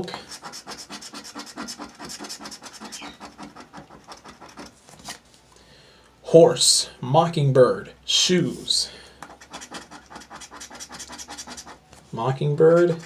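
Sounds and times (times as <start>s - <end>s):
lottery ticket being scratched: 0.0s - 4.8s, 9.3s - 13.0s.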